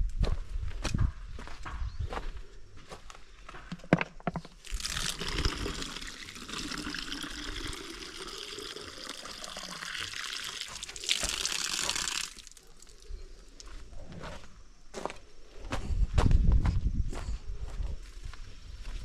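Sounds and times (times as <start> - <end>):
water pouring in a stream: 4.6 - 13.1.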